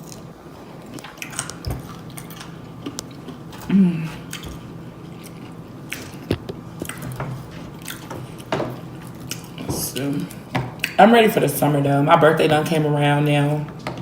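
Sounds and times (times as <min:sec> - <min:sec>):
chewing food: 0:00.0 - 0:11.0
lip-smacking: 0:00.0 - 0:11.0
voice humming: 0:03.6 - 0:04.4.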